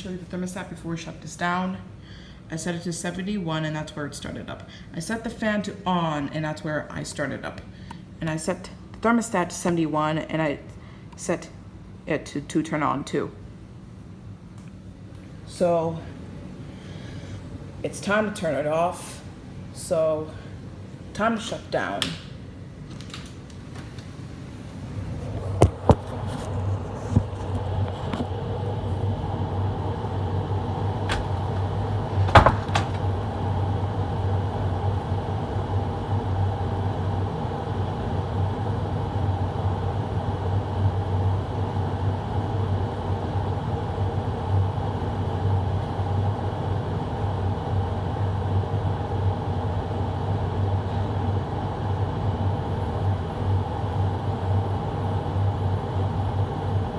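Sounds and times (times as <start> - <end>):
air handler blower humming: 13.3 - 56.9
sharp clicks or knocks: 31.1 - 33.1.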